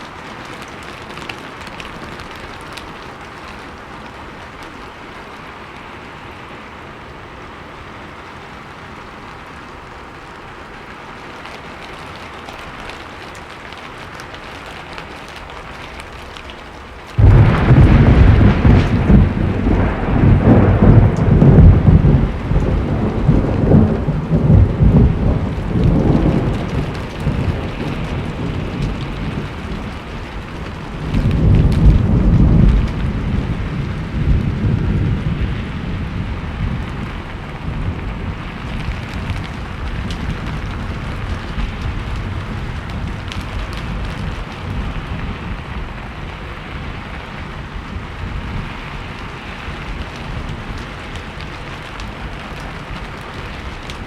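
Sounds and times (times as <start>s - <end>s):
steady rain: 0.0s - 54.0s
thunderclap with rumble: 11.3s - 54.0s.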